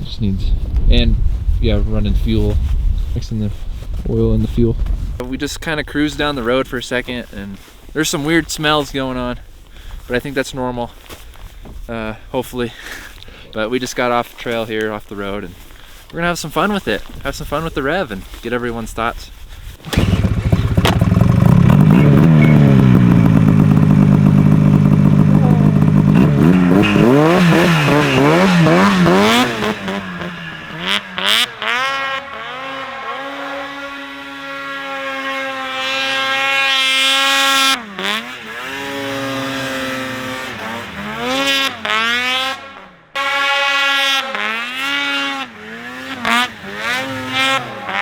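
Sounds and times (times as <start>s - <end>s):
snowmobile engine revving: 19.8s - 48.0s.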